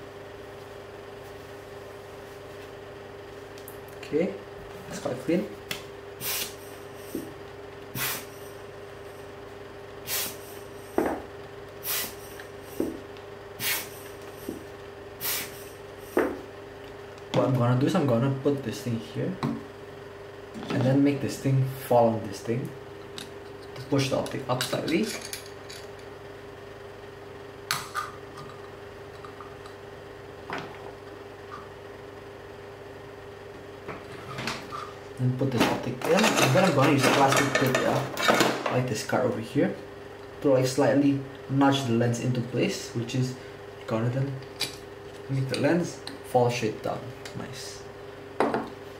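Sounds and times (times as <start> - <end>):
faint steady hum: 0.0 - 48.9
hissing puffs of air: 6.2 - 7.3, 8.0 - 8.6, 10.0 - 11.0, 11.8 - 12.8, 13.6 - 14.6, 15.2 - 16.2.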